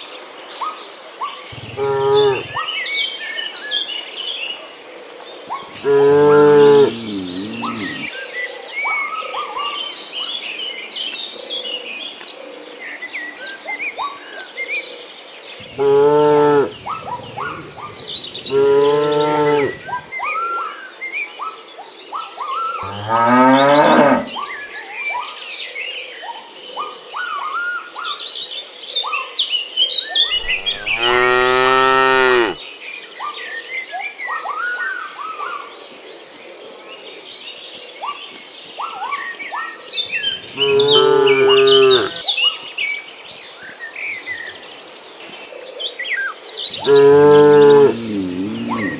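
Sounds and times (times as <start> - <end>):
cattle mooing: 1.6 - 2.6, 5.8 - 8.1, 15.6 - 20.0, 22.8 - 24.4, 30.4 - 32.6, 40.4 - 42.2, 46.7 - 48.9.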